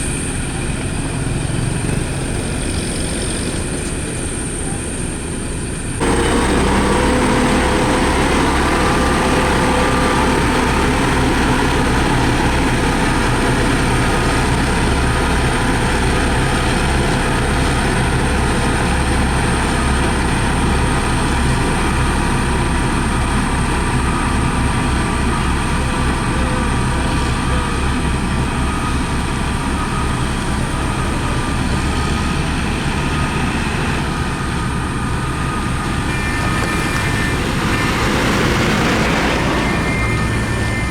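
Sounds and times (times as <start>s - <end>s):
diesel engine rumbling: 0.0s - 40.9s.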